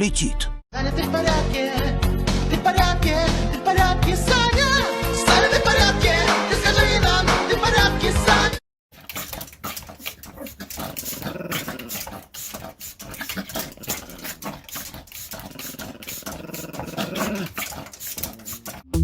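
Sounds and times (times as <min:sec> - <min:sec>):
dog growling: 0:09.0 - 0:19.0.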